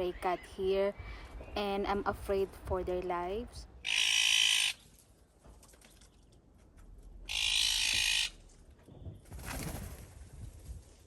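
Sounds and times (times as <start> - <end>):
magpie chattering: 3.8 - 4.8, 7.3 - 8.4.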